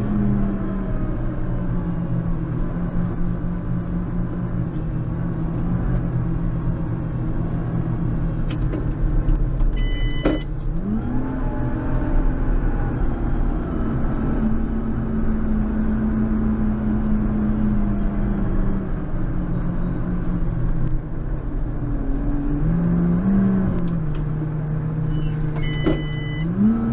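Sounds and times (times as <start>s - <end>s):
short electronic beep: 9.8s - 10.5s.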